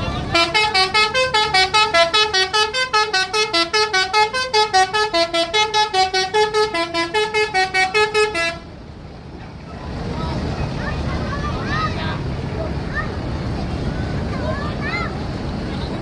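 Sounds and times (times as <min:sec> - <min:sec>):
bus horn melody: 0:00.1 - 0:08.7.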